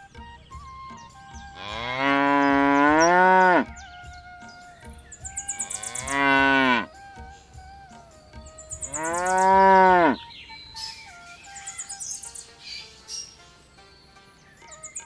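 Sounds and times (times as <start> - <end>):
buffalo mooing: 1.6 - 3.7, 5.6 - 6.9, 8.9 - 10.2.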